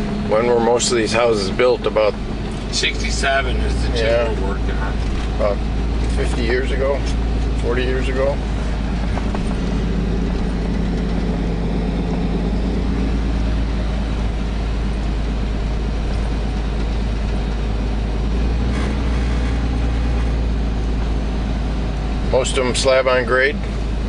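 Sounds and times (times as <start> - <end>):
vehicle engine and road rumble: 0.0 - 24.0.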